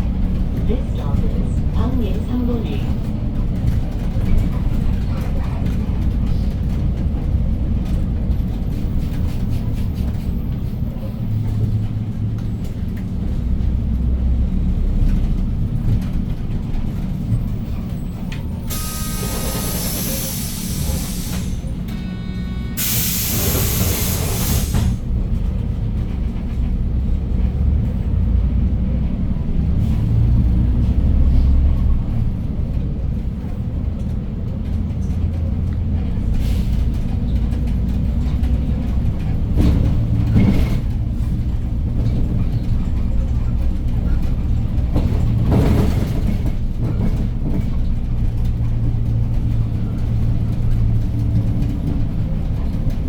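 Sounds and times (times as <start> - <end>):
bus engine rumble: 0.0 - 53.0
compressed air hiss: 22.8 - 25.0.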